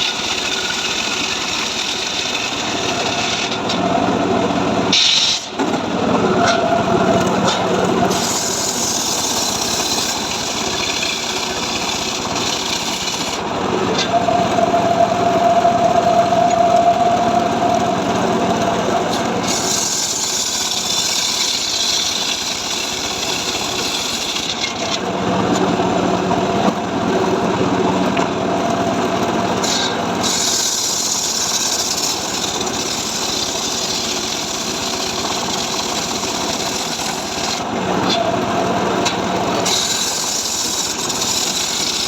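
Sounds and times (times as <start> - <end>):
chainsaw engine running: 0.0 - 3.2, 5.7 - 24.1, 25.1 - 42.0
chain cutting wood hissing: 7.5 - 13.5, 39.6 - 42.0.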